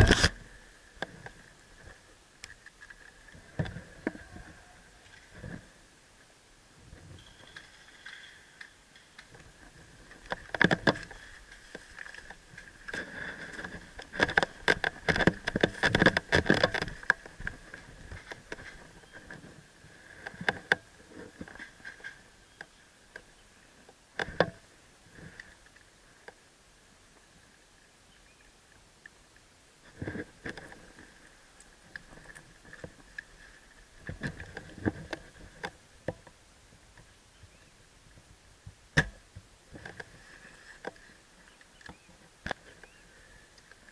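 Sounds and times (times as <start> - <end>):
clicking and crackling: 7.4 - 19.4.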